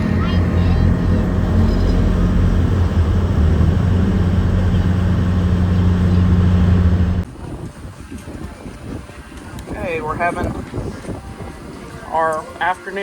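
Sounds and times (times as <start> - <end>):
engine running with low drone: 0.0 - 7.3.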